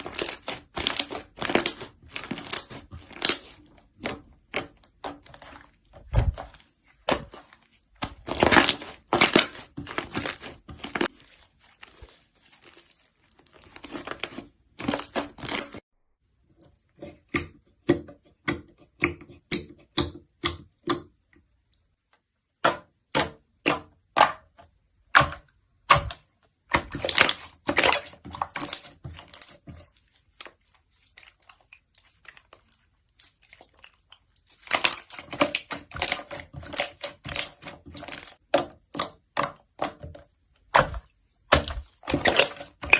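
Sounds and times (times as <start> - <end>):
slime clicking and crackling: 0.0 - 15.8, 26.7 - 42.9.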